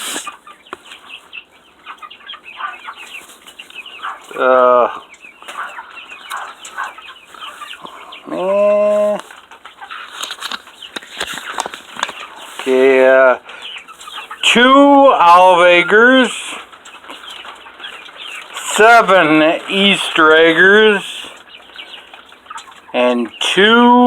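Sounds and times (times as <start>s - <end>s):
chicken drawn-out call: 0.0s - 23.6s
chickens clucking: 0.0s - 24.0s.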